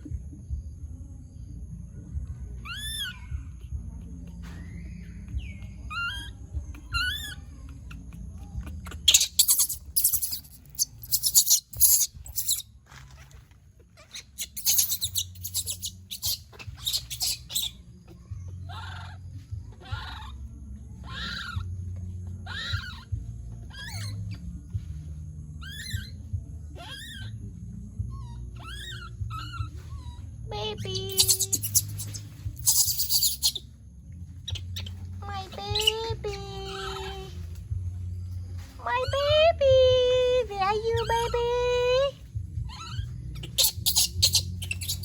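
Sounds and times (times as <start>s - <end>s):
baby monkey calling: 2.5s - 24.8s, 25.6s - 27.4s, 28.0s - 37.8s, 38.6s - 45.0s
monkey shrieking: 2.6s - 3.7s, 4.6s - 12.7s, 14.0s - 21.7s, 22.4s - 24.4s, 25.6s - 26.2s, 26.8s - 27.4s, 28.2s - 33.6s, 34.4s - 37.4s, 40.9s - 45.0s.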